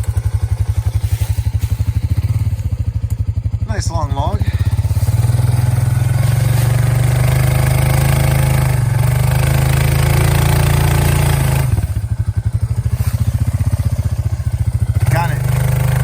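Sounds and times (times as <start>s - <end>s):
atv engine running under load: 0.0s - 16.0s.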